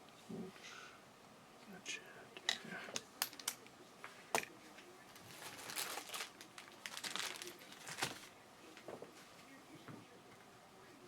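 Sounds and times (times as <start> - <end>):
plastic wrapping crinkling: 5.2 - 8.3.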